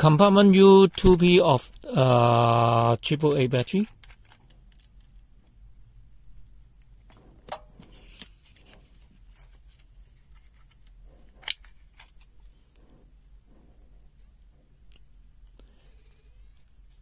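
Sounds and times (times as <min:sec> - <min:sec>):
plastic handling sounds: 0:00.0 - 0:05.6, 0:06.6 - 0:13.1.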